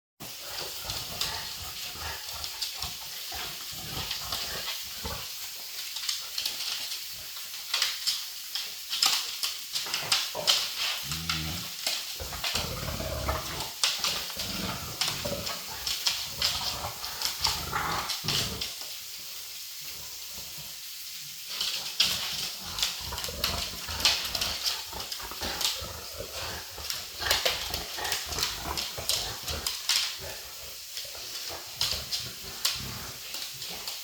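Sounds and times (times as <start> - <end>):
dog grunting: 0.2 - 5.5, 9.9 - 18.9, 21.8 - 34.0
dogs scuffling at play: 0.2 - 34.0.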